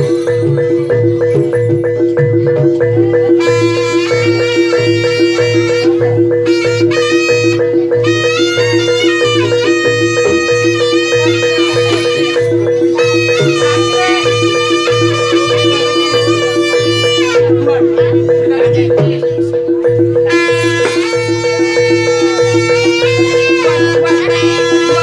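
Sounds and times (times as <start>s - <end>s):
low drum beat: 0.0s - 25.0s
metallic percussion pulse: 0.0s - 25.0s.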